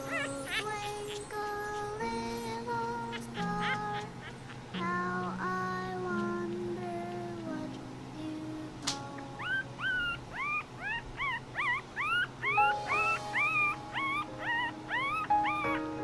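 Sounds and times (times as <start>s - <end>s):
puppy crying in high squeals: 0.0s - 1.2s, 3.1s - 4.8s, 9.4s - 16.0s.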